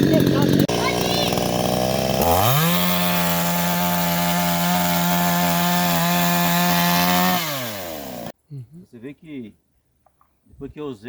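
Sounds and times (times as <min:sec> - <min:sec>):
chainsaw revving: 0:00.0 - 0:08.3.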